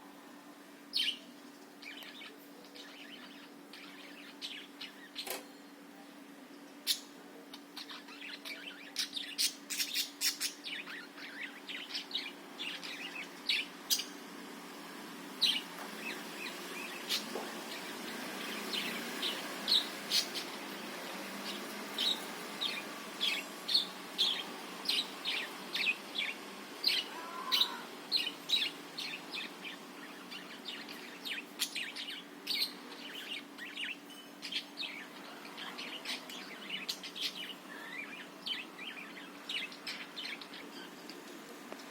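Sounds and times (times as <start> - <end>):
faint steady hum: 0.0 - 41.9
budgerigars chirping: 15.4 - 20.7.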